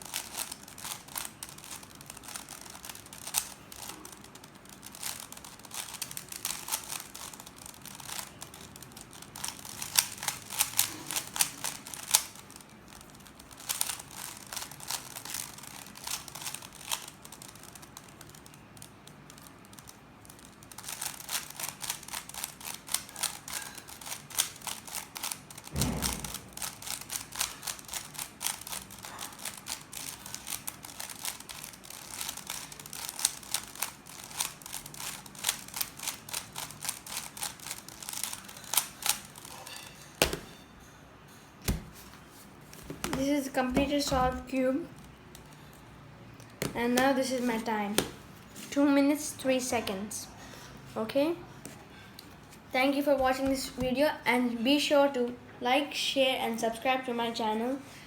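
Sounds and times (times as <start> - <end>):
dull thump: 40.2 - 40.5, 41.7 - 42.2.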